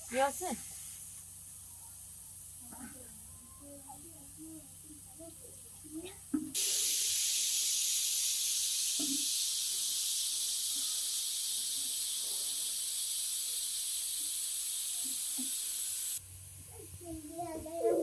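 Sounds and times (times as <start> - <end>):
rainfall hiss: 6.6 - 17.4.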